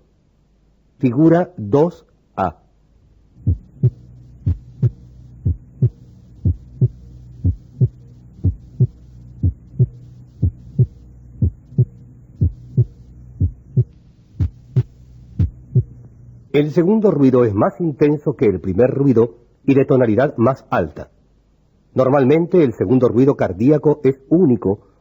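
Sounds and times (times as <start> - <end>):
steady low hum: 0.0 - 25.0
heartbeat lub-dub: 3.4 - 16.3.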